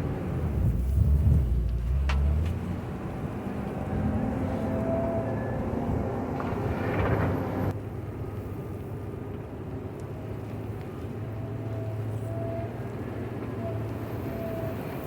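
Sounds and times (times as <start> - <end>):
loader diesel engine under load: 0.0 - 7.8.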